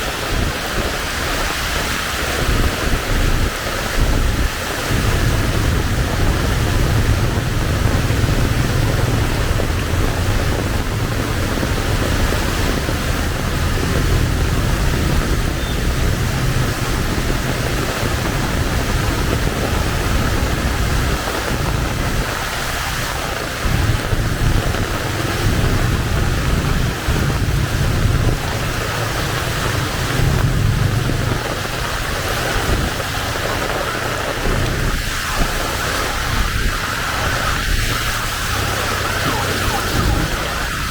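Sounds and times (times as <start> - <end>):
heavy rain hissing: 0.0 - 40.9
low rumble: 4.0 - 40.9.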